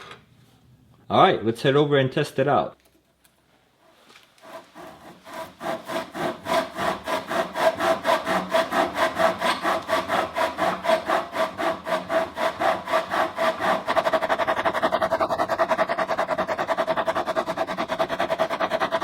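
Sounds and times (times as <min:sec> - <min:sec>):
pocket chainsaw cutting wood: 0:04.4 - 0:14.0.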